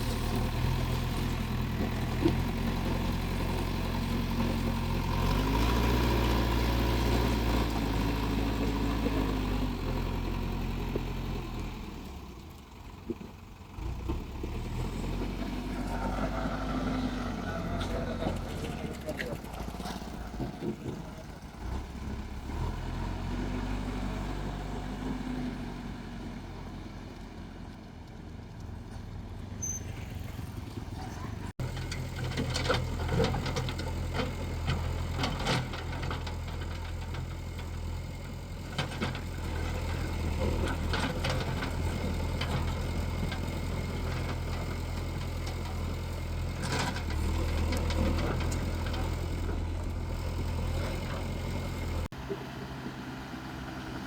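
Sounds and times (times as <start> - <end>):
excavator diesel engine running: 0.0 - 28.4, 29.0 - 54.0.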